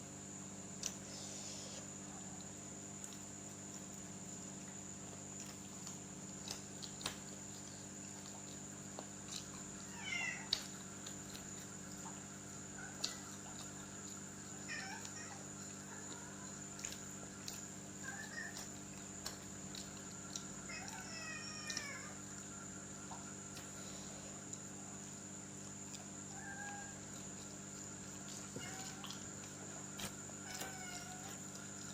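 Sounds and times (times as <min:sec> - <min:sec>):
cat meowing: 0:09.9 - 0:10.5, 0:14.6 - 0:15.4, 0:20.7 - 0:22.1, 0:28.6 - 0:29.1, 0:30.4 - 0:31.4.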